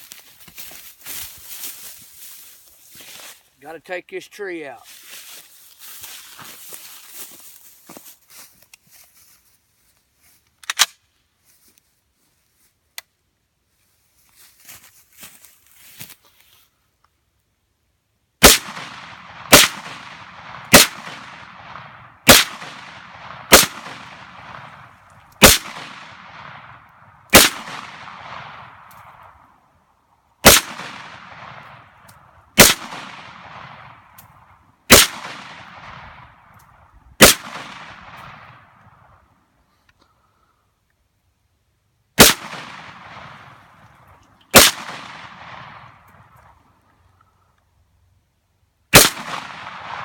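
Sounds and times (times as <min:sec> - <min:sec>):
gunshots with rolling echo: 0:18.4 - 0:29.5, 0:30.4 - 0:39.2, 0:42.2 - 0:46.3, 0:48.9 - 0:50.0.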